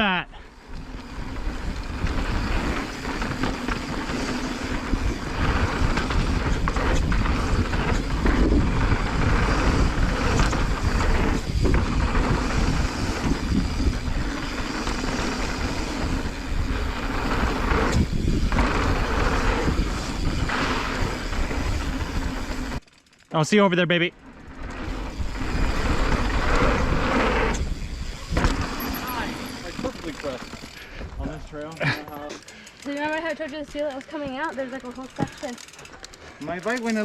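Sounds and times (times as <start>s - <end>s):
bike tyres clattering on dirt: 0.5s - 37.0s
wind rumble on microphone: 0.7s - 22.8s, 24.5s - 29.9s.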